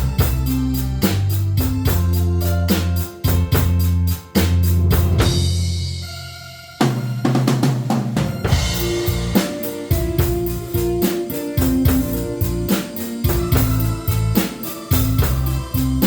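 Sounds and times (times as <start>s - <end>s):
drum kit beat: 0.0s - 16.0s
keyboard: 0.0s - 16.0s
cymbal crash: 5.2s - 16.0s
guitar-toned melody: 8.5s - 16.0s.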